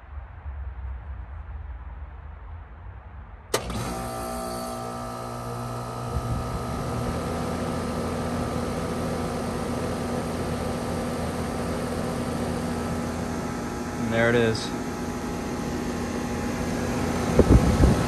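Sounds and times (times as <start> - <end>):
heat pump humming: 3.6 - 18.0.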